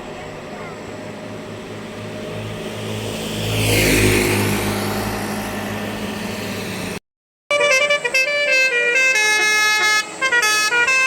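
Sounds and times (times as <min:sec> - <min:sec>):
large vehicle driving past: 0:00.0 - 0:07.0
multi-tone musical horn: 0:07.5 - 0:11.0.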